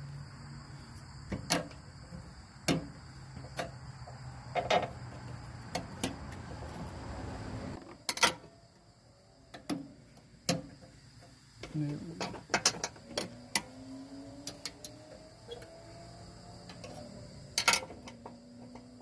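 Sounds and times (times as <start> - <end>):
crickets chirping: 0.0 - 19.0
sharp metal clicks and knocks: 16.7 - 19.0.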